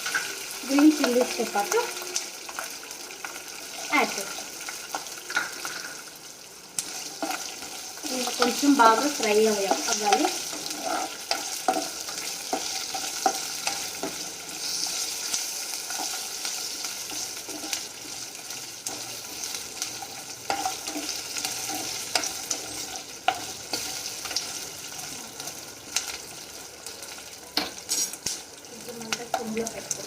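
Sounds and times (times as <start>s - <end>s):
spices sizzling in hot oil: 0.0s - 30.0s
spatula scraping a pan: 7.0s - 24.5s.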